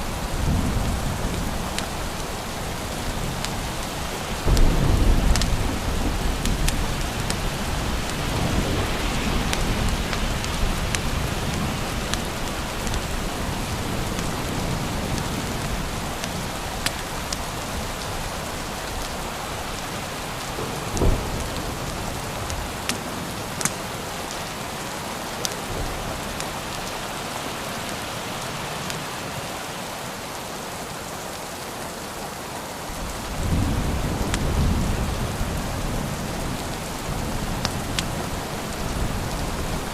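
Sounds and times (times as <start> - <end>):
rolling thunder: 0.0 - 16.8, 17.4 - 24.7, 33.0 - 39.9
heavy rain: 0.0 - 39.9.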